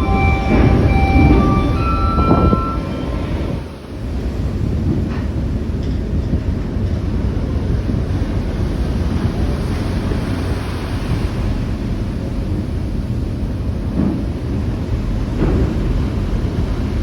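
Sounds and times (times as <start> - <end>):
rough sea rushing: 0.0 - 17.0
wind buffeting microphone: 0.0 - 17.0.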